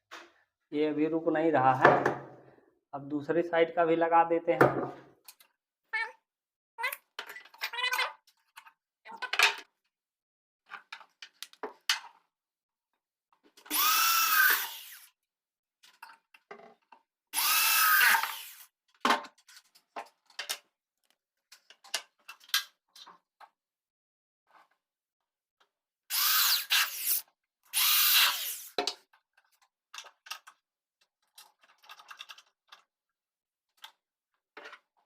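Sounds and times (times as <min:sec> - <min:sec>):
cordless drill driving screws: 0:13.7 - 0:15.1, 0:17.4 - 0:18.7, 0:26.1 - 0:28.8.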